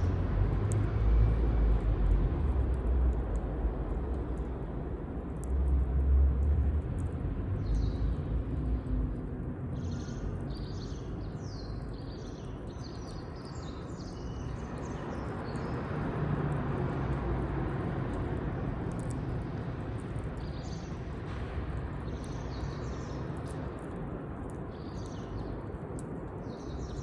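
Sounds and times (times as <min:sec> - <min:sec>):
outdoor background noise: 0:00.0 - 0:27.0
faint clicks: 0:18.9 - 0:20.8.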